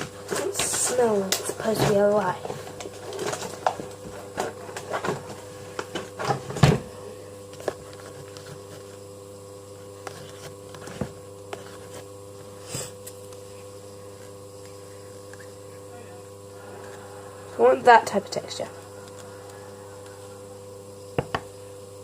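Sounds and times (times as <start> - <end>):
steady electrical hum: 0.0 - 22.0
objects knocking and clicking on table: 21.2 - 21.5.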